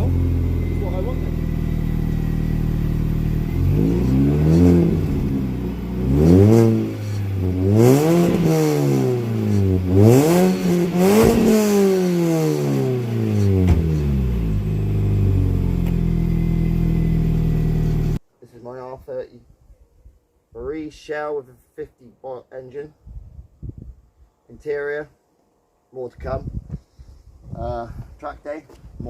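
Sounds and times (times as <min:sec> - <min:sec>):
car engine idling and revving: 0:00.0 - 0:18.2.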